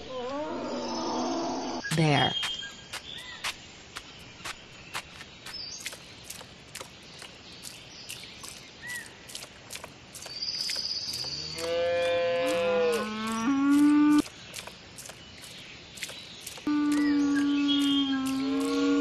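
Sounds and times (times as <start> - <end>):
cow mooing: 11.5 - 14.2.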